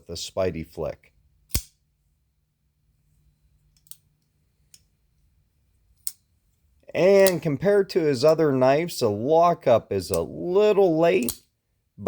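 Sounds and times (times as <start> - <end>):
folding knife blade snapping open: 1.5 - 1.7.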